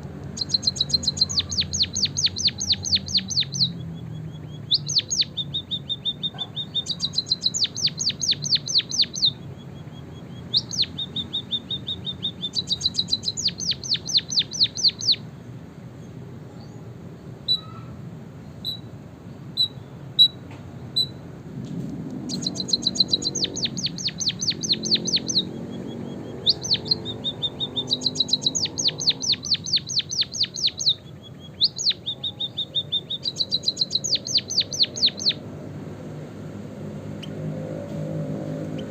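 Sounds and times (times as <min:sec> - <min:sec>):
single bird chirps: 0:00.3 - 0:15.2, 0:17.4 - 0:17.9, 0:22.2 - 0:35.4
bird singing whistled song: 0:00.4 - 0:15.2, 0:17.4 - 0:17.8, 0:19.6 - 0:20.4, 0:21.0 - 0:21.2, 0:22.3 - 0:35.4.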